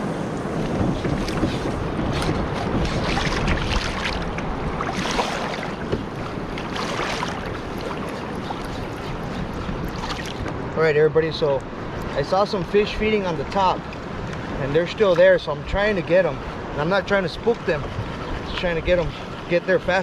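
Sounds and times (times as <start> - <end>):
water splashing along hull: 0.0 - 20.0
wind buffeting microphone: 0.0 - 20.0.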